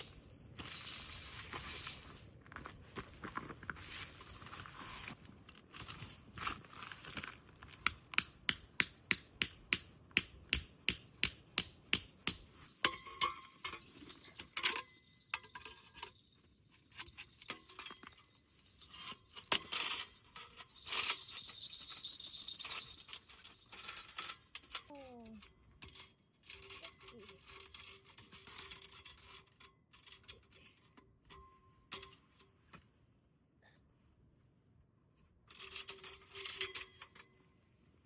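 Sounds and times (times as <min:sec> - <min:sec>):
metal clinks and scrapes: 0:00.0 - 0:32.6, 0:35.4 - 0:37.6.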